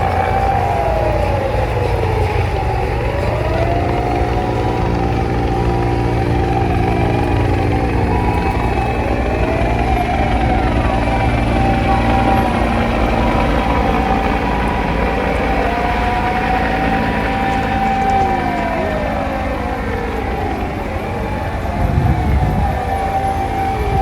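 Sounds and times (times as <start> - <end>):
fire engine sirens wailing: 0.0 - 24.0
heavy truck engines running: 0.0 - 24.0.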